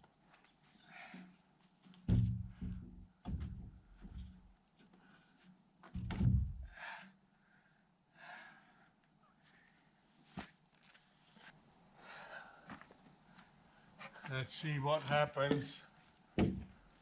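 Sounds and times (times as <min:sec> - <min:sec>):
log thudding against wooden wall: 0:02.0 - 0:04.6, 0:05.9 - 0:06.8, 0:16.4 - 0:16.8.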